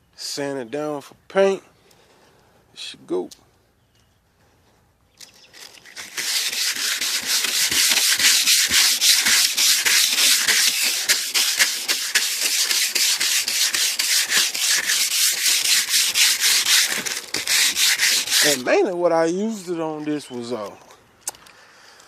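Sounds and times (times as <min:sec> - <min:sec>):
sandpaper scrubbing paint: 0:05.8 - 0:18.8.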